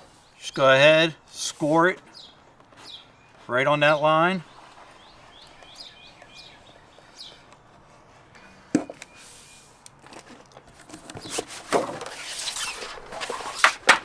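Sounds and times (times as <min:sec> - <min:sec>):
faint bird chirps: 0:02.0 - 0:03.5, 0:04.4 - 0:07.6, 0:08.3 - 0:09.8.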